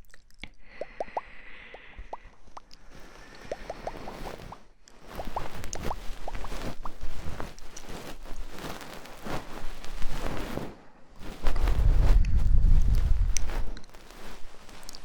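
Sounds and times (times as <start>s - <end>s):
air blown onto microphone: 0.6s - 6.6s, 10.7s - 13.9s
scratchy crackling on microphone: 2.1s - 15.0s.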